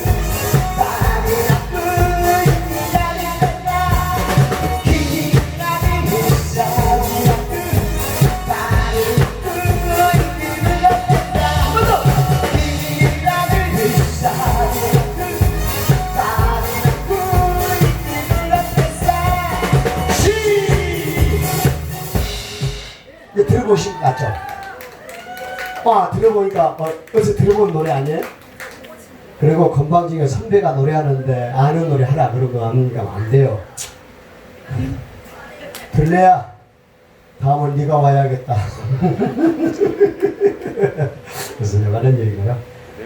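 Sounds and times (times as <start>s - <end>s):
person singing: 0.0s - 22.2s
steady drum beat: 0.0s - 23.1s.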